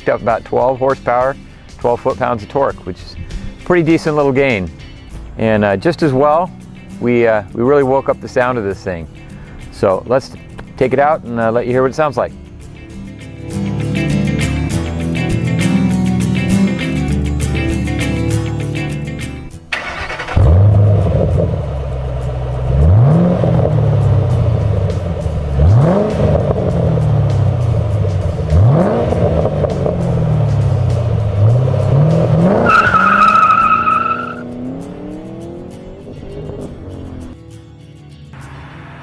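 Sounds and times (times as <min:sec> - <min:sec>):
guitar music: 0:00.0 - 0:39.0
car engine revving: 0:13.4 - 0:37.4
high squeal: 0:32.6 - 0:34.5.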